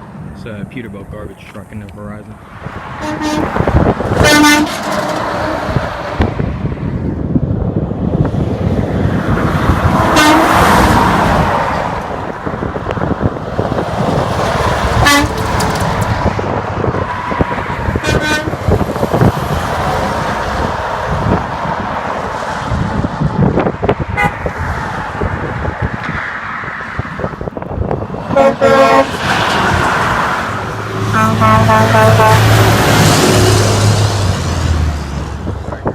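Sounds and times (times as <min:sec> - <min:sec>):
highway traffic rushing past: 0:00.0 - 0:35.9
truck horn toots: 0:03.0 - 0:05.6, 0:10.1 - 0:10.7, 0:15.0 - 0:15.4, 0:18.0 - 0:18.6, 0:24.2 - 0:24.5, 0:28.3 - 0:29.2, 0:31.1 - 0:32.7.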